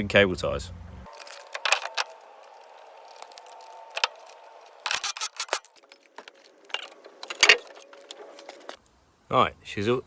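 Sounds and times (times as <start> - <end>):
tools clicking and rattling: 1.1 - 8.8.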